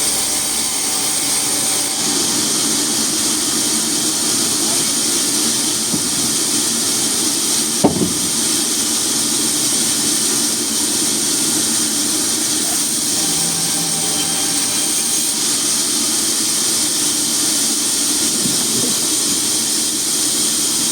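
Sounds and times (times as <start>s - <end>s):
machinery hissing: 0.0s - 20.9s
short knock: 7.8s - 8.6s.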